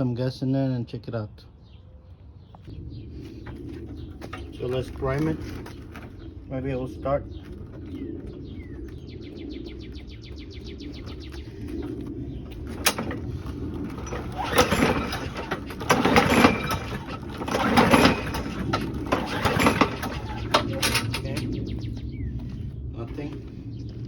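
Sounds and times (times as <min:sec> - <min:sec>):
recoil starter pulls: 0:12.7 - 0:21.5.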